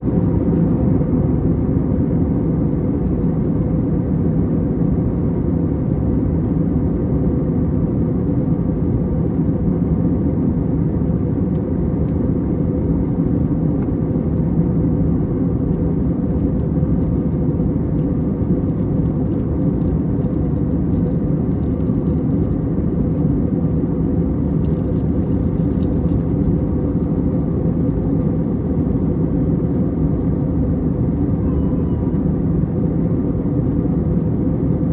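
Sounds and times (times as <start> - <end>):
engine roar and rushing air: 0.0 - 34.9.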